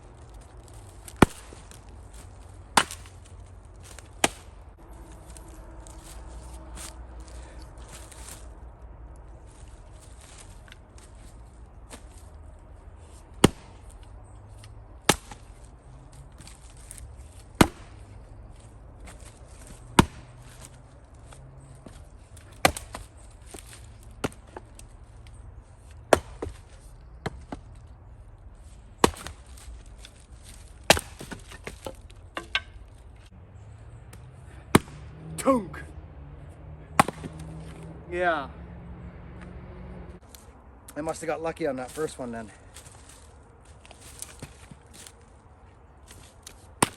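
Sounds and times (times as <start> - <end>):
axe chopping firewood: 0.1 - 8.5, 9.2 - 12.3, 13.1 - 27.8, 28.8 - 33.3, 34.0 - 35.7, 36.6 - 38.0, 41.9 - 45.2, 45.8 - 46.9
wood knocking: 30.9 - 32.8.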